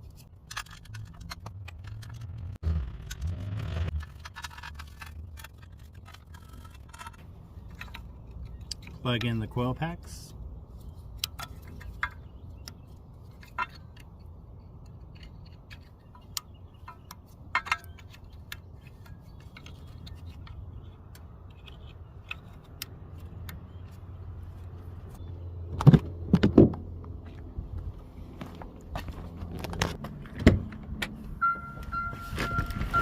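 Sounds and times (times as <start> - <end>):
car engine starting: 0.8 - 5.2.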